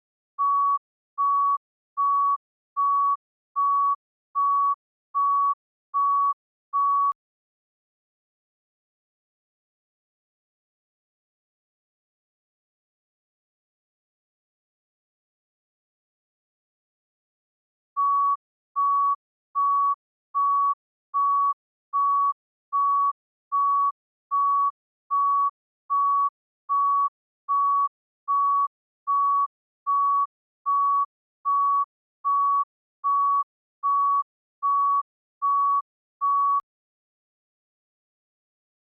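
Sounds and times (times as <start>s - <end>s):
heart monitor beeping: 0.4s - 7.2s, 18.0s - 36.6s.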